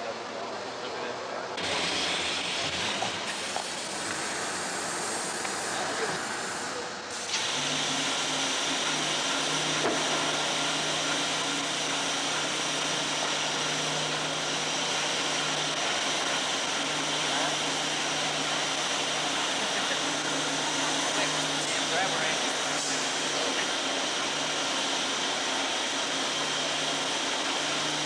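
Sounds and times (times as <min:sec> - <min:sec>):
machine hiss and hum: 0:01.4 - 0:28.0.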